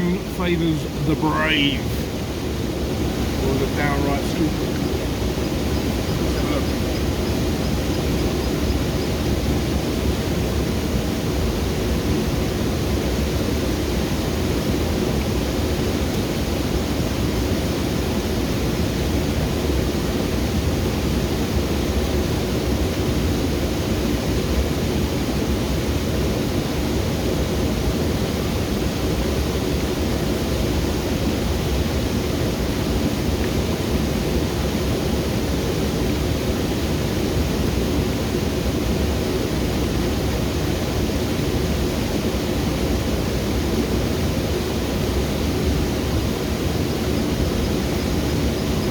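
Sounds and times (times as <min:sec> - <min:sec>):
waterfall roaring: 0:00.0 - 0:18.2.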